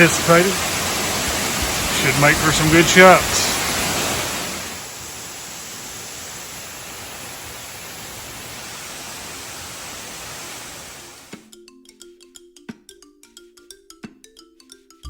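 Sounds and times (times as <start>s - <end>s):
waterfall rushing: 0.0s - 11.4s
mallet percussion music: 11.4s - 15.0s.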